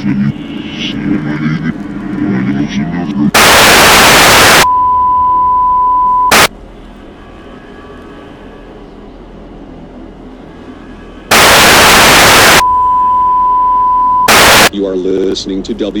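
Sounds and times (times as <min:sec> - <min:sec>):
radio static blasts: 0:03.2 - 0:04.7, 0:06.2 - 0:06.5, 0:11.3 - 0:12.7, 0:14.2 - 0:14.7
loud steady single-pitch tone: 0:03.4 - 0:06.5, 0:11.3 - 0:14.7.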